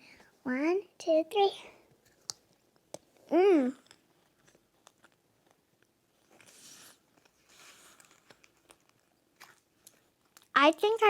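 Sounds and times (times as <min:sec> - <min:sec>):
soft chewing crunches: 0:02.0 - 0:10.6.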